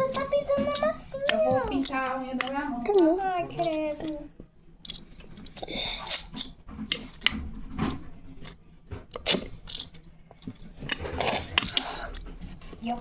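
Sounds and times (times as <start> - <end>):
plastic toy tools clicking: 0.0 - 4.2, 4.8 - 12.2.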